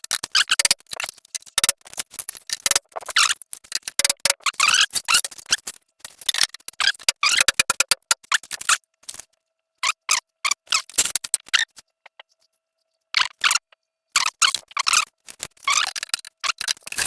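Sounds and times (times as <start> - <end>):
hard plastic parts knocking: 3.9 - 4.4, 6.4 - 8.2.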